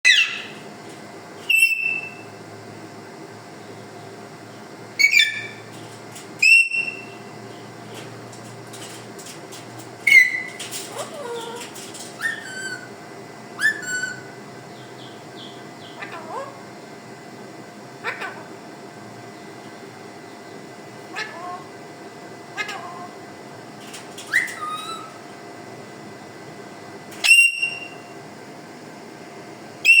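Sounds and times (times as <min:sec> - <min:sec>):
parrot whistling: 0:00.1 - 0:00.5, 0:01.5 - 0:02.2, 0:05.0 - 0:05.6, 0:12.2 - 0:12.9, 0:13.6 - 0:14.3, 0:24.3 - 0:25.2, 0:27.2 - 0:28.0.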